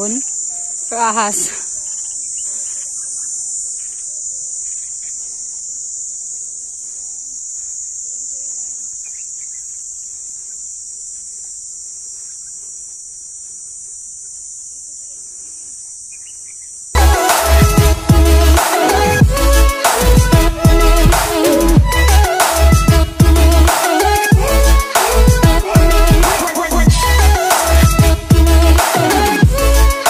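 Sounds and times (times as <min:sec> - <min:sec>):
insects buzzing: 0:00.0 - 0:30.0.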